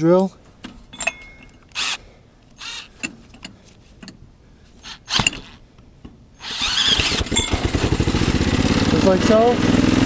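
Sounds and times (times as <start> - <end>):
metallic rattles and clicks: 0.6 - 4.2, 4.8 - 6.2, 7.0 - 8.0.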